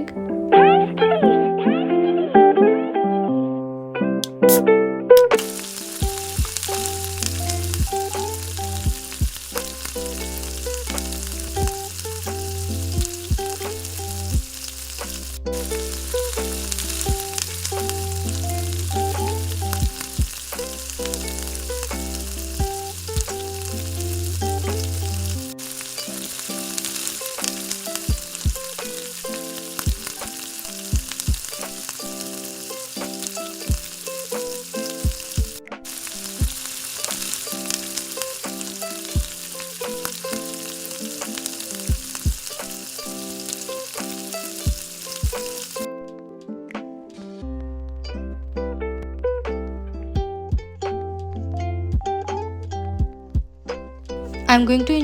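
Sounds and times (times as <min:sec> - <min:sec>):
background music with beat: 0:05.2 - 0:48.2, 0:49.0 - 0:55.0
egg sizzling in oil: 0:05.4 - 0:35.3, 0:35.9 - 0:45.9.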